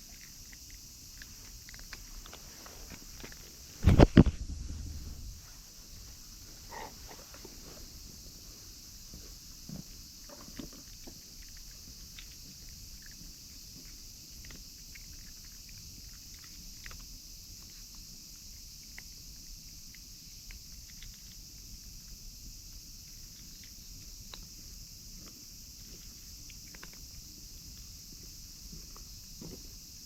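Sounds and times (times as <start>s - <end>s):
cats crunching dry food: 0.0s - 8.0s, 8.7s - 29.6s
high-pitched hiss: 0.0s - 11.2s.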